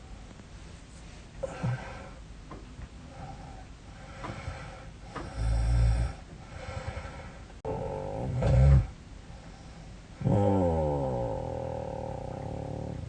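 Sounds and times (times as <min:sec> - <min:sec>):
soft breaths: 0:00.0 - 0:07.8, 0:09.2 - 0:10.2
woman snoring: 0:05.2 - 0:06.2.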